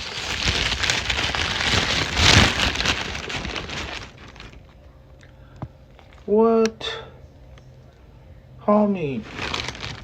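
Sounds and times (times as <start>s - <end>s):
paper wrapper crinkling: 0.0s - 4.8s, 9.1s - 10.0s.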